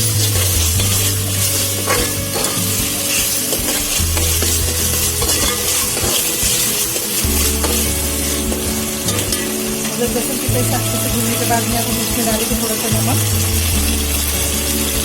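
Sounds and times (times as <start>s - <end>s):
spoon stirring in pot: 0.0s - 12.9s
paste sizzling in hot oil: 0.0s - 15.0s.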